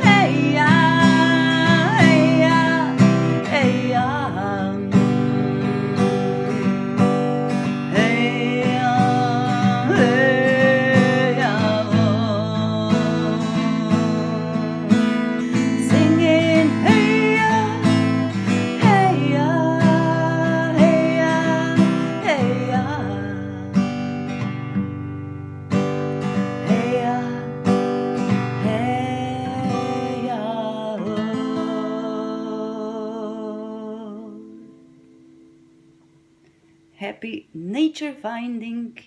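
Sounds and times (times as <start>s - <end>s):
person singing: 0.0s - 24.1s, 26.4s - 34.9s, 37.0s - 39.0s
acoustic guitar strumming: 0.0s - 37.4s.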